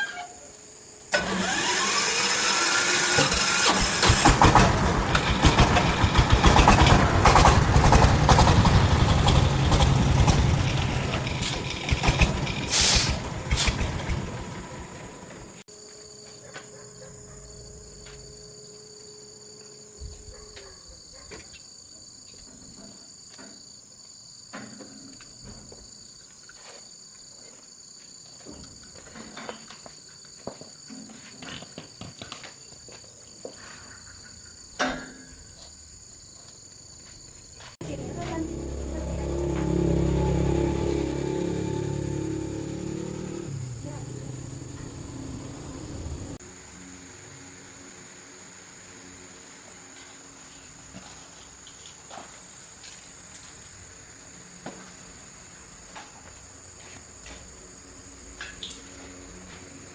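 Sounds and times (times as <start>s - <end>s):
crickets chirping: 0.0s - 2.1s, 15.6s - 59.9s
engine rumbling: 1.1s - 15.7s, 37.8s - 46.8s.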